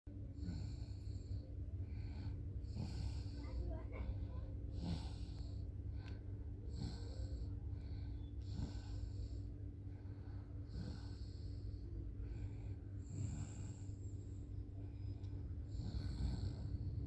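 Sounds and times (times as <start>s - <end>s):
steady low hum: 0.1s - 17.0s
toddler snoring: 0.2s - 5.7s, 6.6s - 9.5s, 10.5s - 14.4s, 15.6s - 17.0s.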